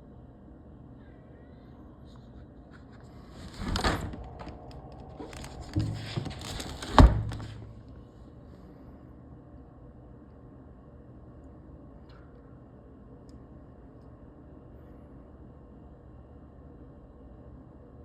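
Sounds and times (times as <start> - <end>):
window scraping and rattling: 3.0 - 8.0.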